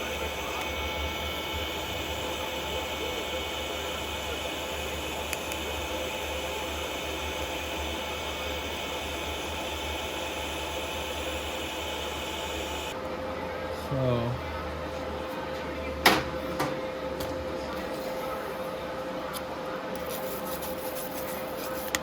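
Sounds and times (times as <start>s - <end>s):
welding arc hissing: 0.0s - 13.0s.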